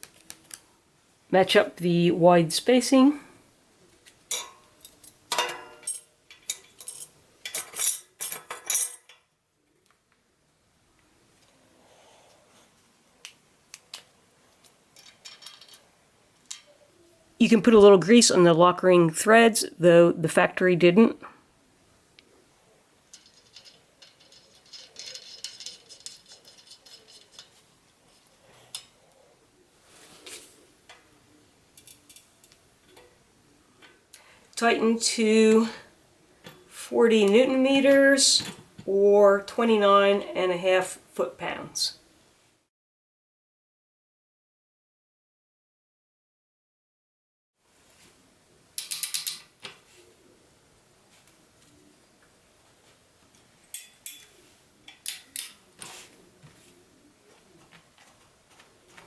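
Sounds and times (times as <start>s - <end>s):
metal bicycle cogs clinking: 23.1s - 27.6s, 53.7s - 54.3s
small metal clicks: 54.9s - 55.6s.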